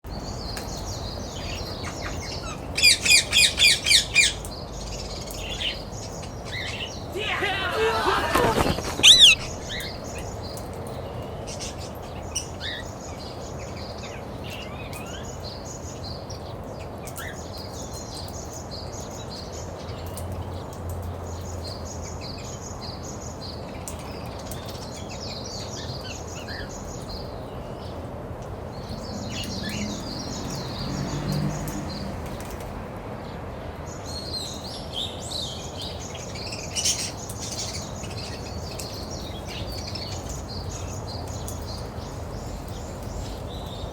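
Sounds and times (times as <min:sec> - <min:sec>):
small birds chirping: 0:00.1 - 0:32.8, 0:33.4 - 0:43.9
loud bird call: 0:07.0 - 0:10.3.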